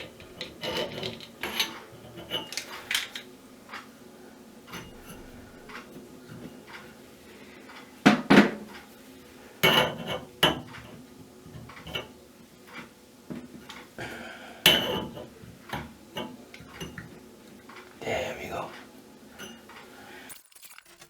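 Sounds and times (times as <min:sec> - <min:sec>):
metal tools clinking and knocking: 0:00.0 - 0:03.2.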